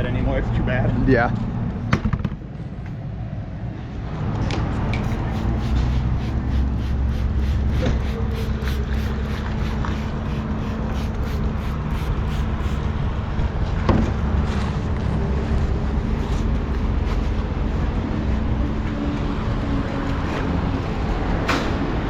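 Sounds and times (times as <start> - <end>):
quick scuffing strokes: 5.0 - 12.9.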